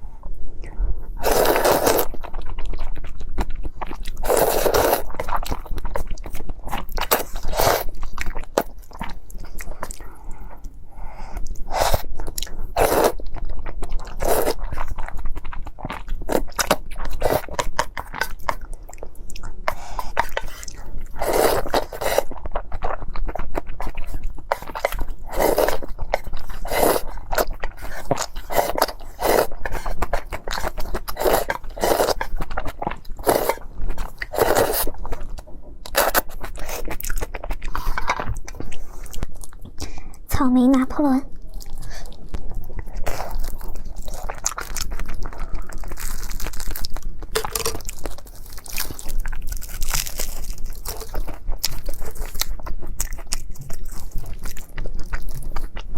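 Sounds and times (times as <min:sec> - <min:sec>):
crunchy bites and chewing: 0:41.6 - 0:55.9.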